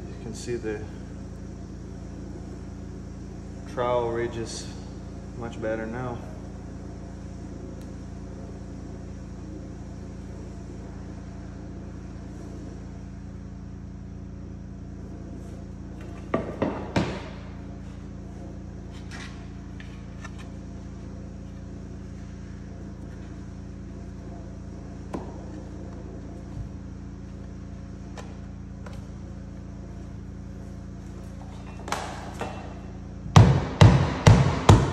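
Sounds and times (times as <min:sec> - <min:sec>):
low machine hum: 0:00.0 - 0:34.9
sharp knocks: 0:16.3 - 0:17.4, 0:33.3 - 0:34.9.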